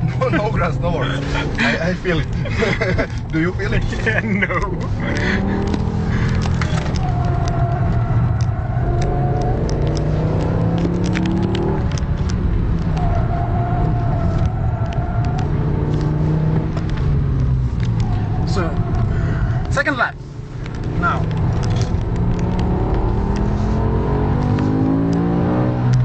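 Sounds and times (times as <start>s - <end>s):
car engine heard from cabin: 14.7s - 26.0s.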